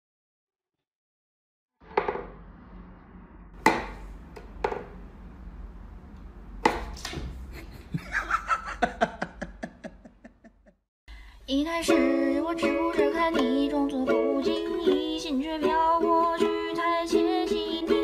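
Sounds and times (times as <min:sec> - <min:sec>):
low hum: 0:01.9 - 0:09.5
sharp knocks: 0:03.6 - 0:04.9.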